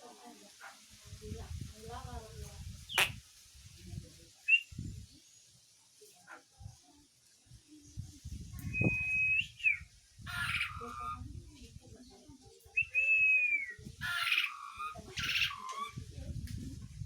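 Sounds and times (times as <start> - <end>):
bird whistles: 2.9 - 3.2, 4.5 - 4.7, 8.6 - 11.2, 12.8 - 16.0
harsh raspy bird calls: 2.9 - 3.2, 9.6 - 11.2, 13.4 - 16.0.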